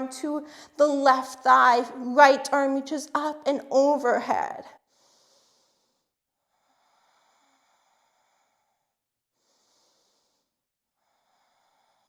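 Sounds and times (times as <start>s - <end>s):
slow breathing through nose: 4.8s - 12.0s.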